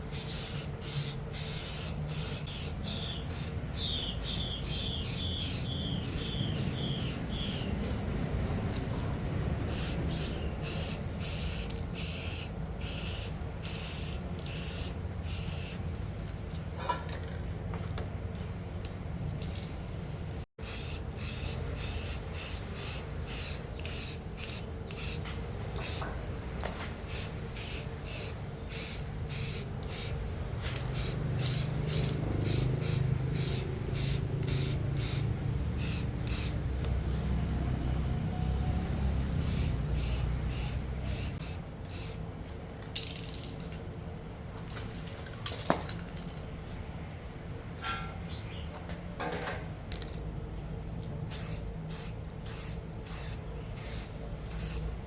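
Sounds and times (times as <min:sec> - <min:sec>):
pressurised spray hissing: 0:00.0 - 0:08.0, 0:09.7 - 0:15.8, 0:20.6 - 0:25.2, 0:27.1 - 0:30.2, 0:30.9 - 0:37.4, 0:39.1 - 0:42.2, 0:51.3 - 0:54.9
steady low hum: 0:00.0 - 0:45.4.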